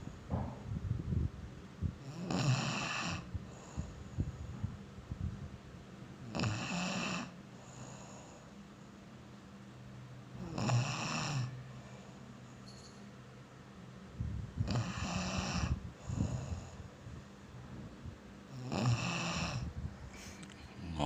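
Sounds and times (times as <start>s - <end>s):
person snoring: 2.1s - 3.3s, 14.7s - 16.3s, 18.6s - 19.7s.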